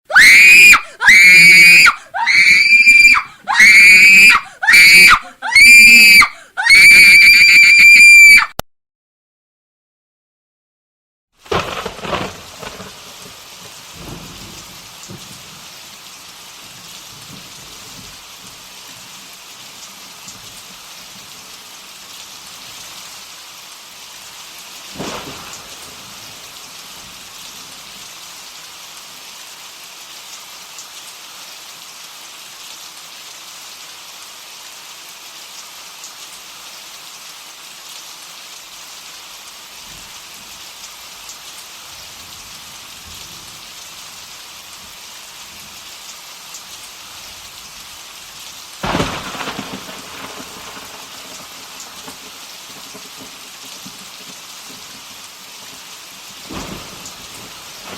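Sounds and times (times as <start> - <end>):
heavy rain: 0.0 - 8.6, 11.4 - 57.9
sharp thunderclap: 11.4 - 15.6, 24.9 - 27.5, 48.8 - 54.4, 56.4 - 57.9
low thunder rumbles: 11.5 - 15.8, 24.9 - 27.9, 48.8 - 54.0, 56.4 - 57.9.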